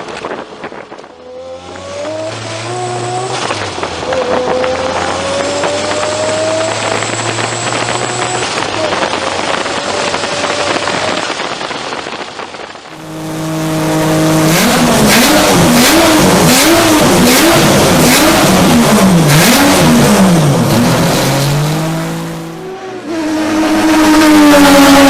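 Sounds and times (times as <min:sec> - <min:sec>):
rotary engine revving: 0:01.2 - 0:11.6, 0:12.9 - 0:25.0
engine exhaust cracks: 0:03.2 - 0:13.8.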